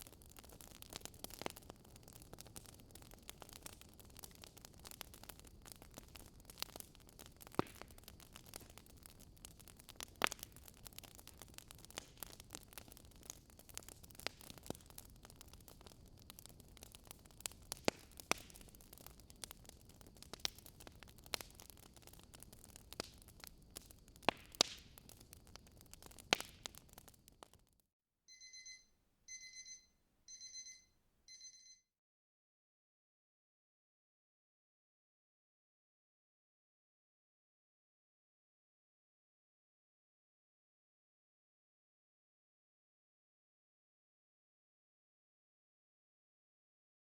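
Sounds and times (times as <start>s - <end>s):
fireplace crackling and popping: 0.0s - 27.8s
digital watch alarm beeping: 28.3s - 31.8s.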